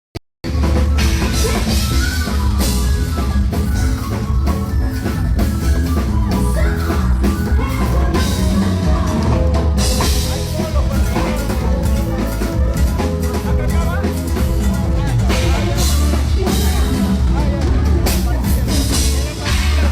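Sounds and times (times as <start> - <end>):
cumbia band playing: 0.4 - 19.9
drum kit: 0.4 - 19.9
strong bass line: 0.4 - 19.9.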